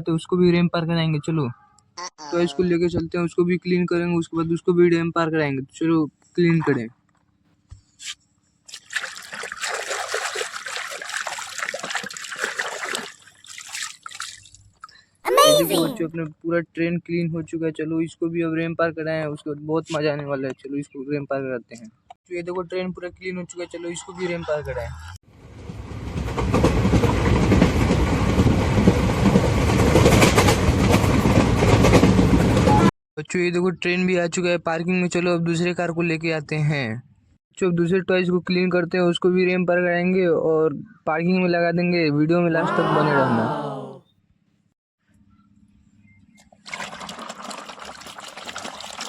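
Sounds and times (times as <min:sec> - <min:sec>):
water trickling and splashing: 0:08.7 - 0:15.0, 0:46.5 - 0:49.0.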